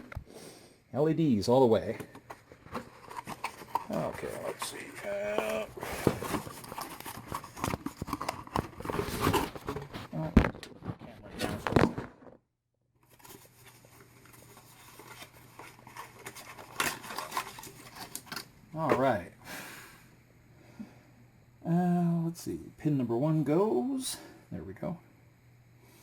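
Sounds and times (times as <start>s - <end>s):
faint steady hum: 0.0s - 12.4s, 13.0s - 26.0s
hands handling small parts: 1.9s - 10.6s.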